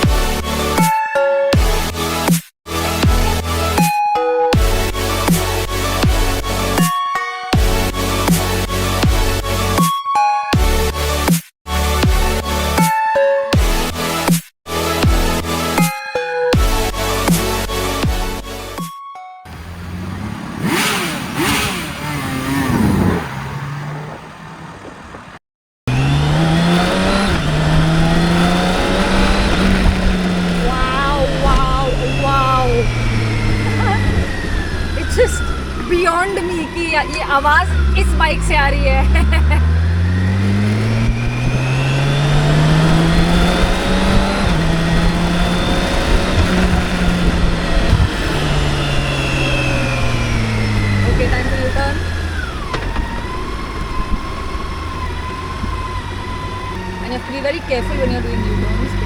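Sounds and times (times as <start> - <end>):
engine pulling under load: 19.5 - 59.0
motorcycle engine throttle blips: 19.5 - 59.0.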